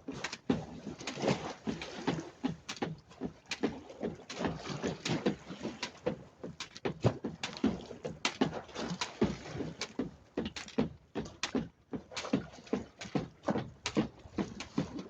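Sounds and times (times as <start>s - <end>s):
water gurgling: 0.0s - 10.0s
jump rope slapping floor: 0.0s - 15.0s.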